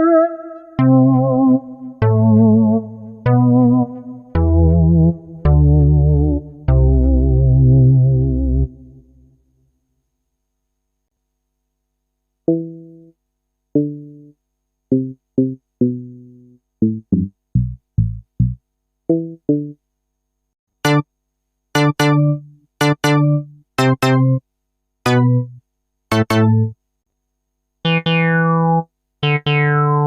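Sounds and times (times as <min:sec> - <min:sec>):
synthesized keyboard notes: 0:00.0 - 0:09.0, 0:12.5 - 0:13.1, 0:13.8 - 0:19.8, 0:20.8 - 0:21.1, 0:21.8 - 0:24.4, 0:25.0 - 0:26.8, 0:27.8 - 0:30.0.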